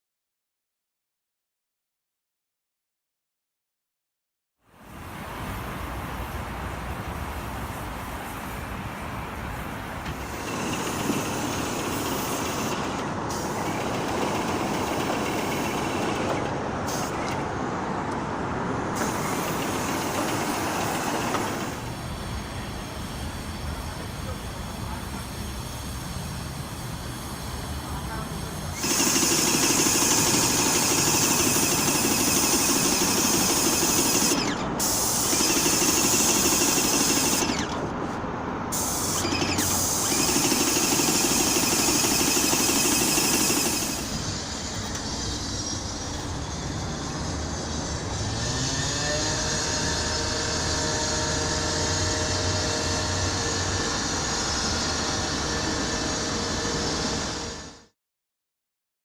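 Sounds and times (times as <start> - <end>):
power tool hissing loudly: 10.1 - 17.4, 19.0 - 37.9, 38.7 - 57.9
machine with rising whine: 10.3 - 58.0.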